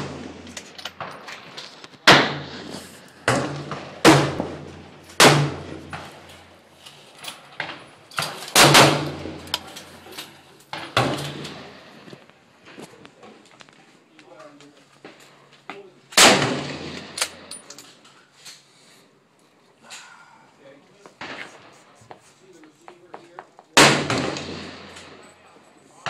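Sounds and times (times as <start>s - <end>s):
rifle shots echoing: 2.0s - 6.5s, 8.1s - 9.9s, 16.2s - 17.6s, 23.8s - 25.2s.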